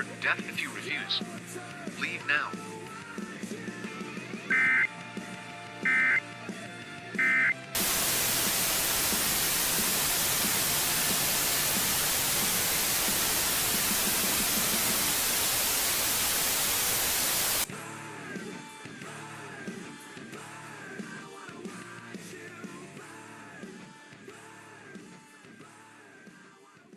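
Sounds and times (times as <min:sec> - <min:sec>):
rock music: 0:00.0 - 0:25.6
white-noise static: 0:07.8 - 0:17.7.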